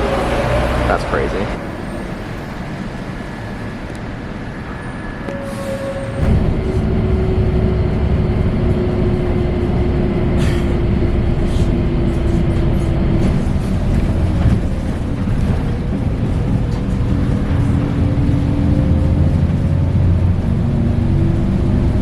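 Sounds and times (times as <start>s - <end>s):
bus engine rumbling: 0.0s - 22.0s
steady droning tone: 6.2s - 18.2s.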